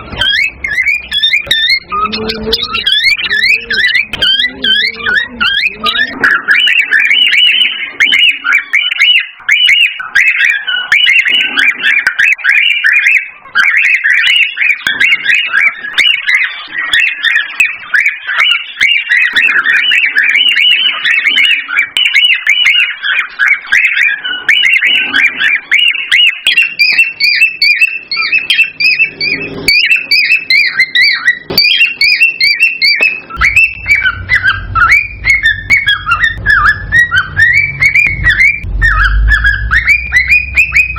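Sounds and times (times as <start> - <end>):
cockatiels chattering and whistling: 0.0 - 40.9
low rumble: 33.4 - 40.9.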